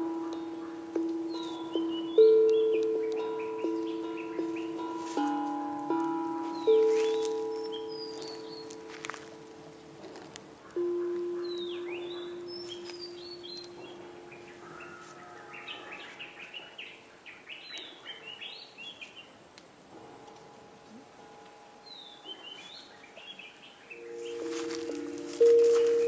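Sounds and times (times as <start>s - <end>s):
ringing musical tone: 0.0s - 16.4s, 23.8s - 26.0s
birds chirping: 0.0s - 26.0s.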